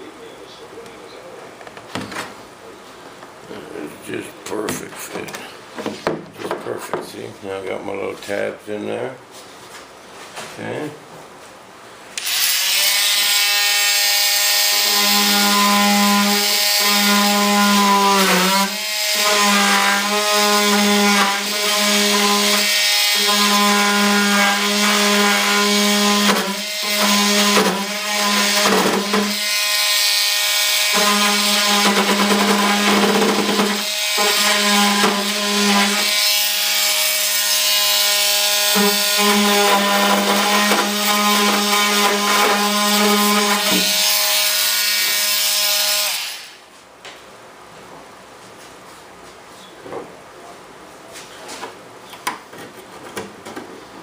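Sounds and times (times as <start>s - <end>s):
sander motor buzzing: 12.2s - 45.2s.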